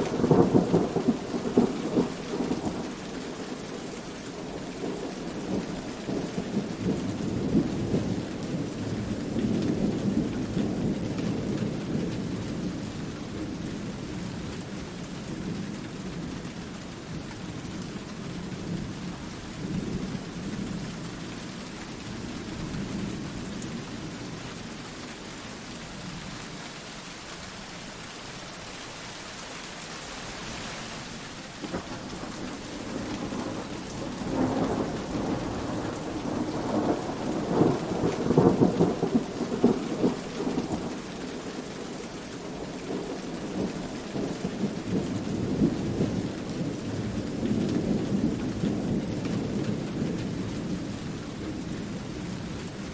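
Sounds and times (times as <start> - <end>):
thunder rumbling: 0.0 - 3.0, 31.6 - 52.6
steady rain: 0.0 - 52.9.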